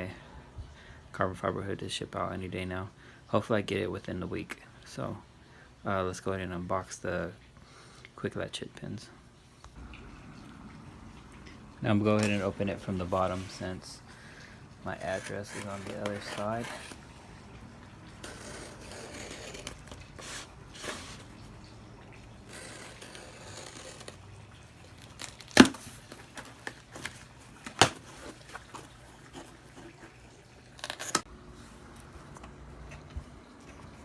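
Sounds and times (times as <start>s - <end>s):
package tearing and rustling: 24.9s - 29.0s, 30.7s - 31.3s.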